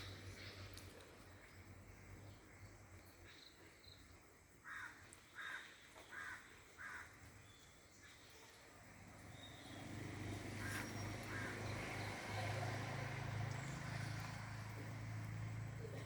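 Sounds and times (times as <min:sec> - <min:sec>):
bird calls: 0:10.5 - 0:12.2.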